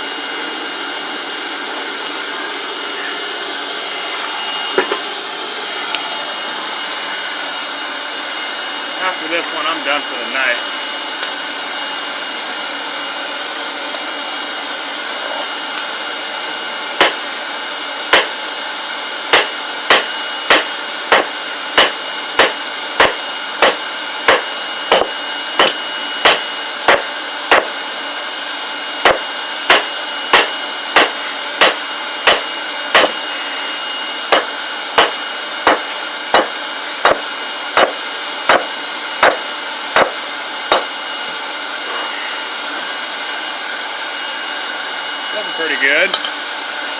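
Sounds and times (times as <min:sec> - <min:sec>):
hammer striking metal on anvil: 0:17.0 - 0:17.2, 0:18.1 - 0:18.4, 0:19.3 - 0:27.8, 0:29.0 - 0:33.2, 0:34.3 - 0:41.0.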